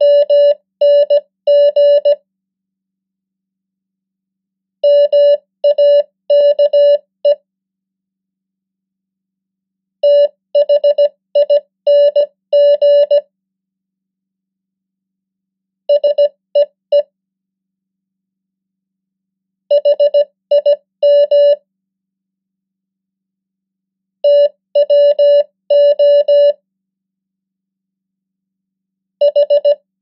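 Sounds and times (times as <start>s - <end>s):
morse code beeps: 0.0s - 2.2s, 4.8s - 7.4s, 10.0s - 13.2s, 15.9s - 17.1s, 19.7s - 21.6s, 24.3s - 26.6s, 29.2s - 29.8s.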